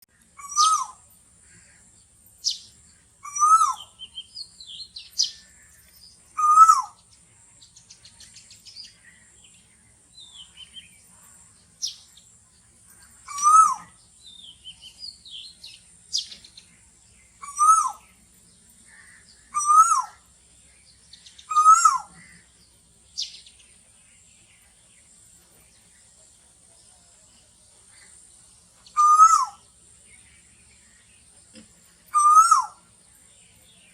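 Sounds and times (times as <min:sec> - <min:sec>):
birds chirping and trilling: 0:00.0 - 0:33.9
koel calling: 0:21.5 - 0:22.3.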